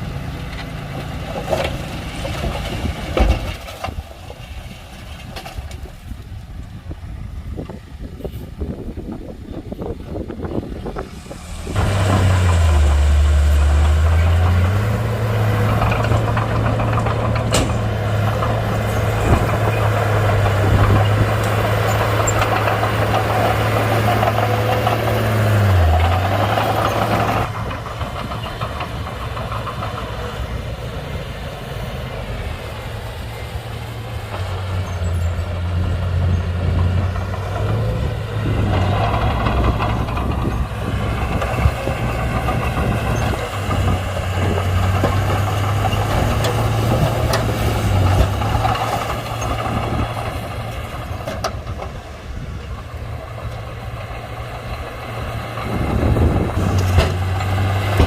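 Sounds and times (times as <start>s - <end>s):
bulldozer diesel engine working: 0.0s - 58.0s.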